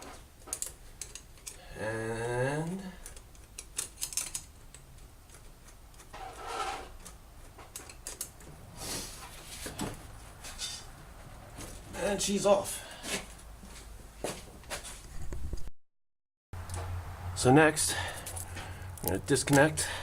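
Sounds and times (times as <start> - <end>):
short scraping rustles: 6.1 - 7.0.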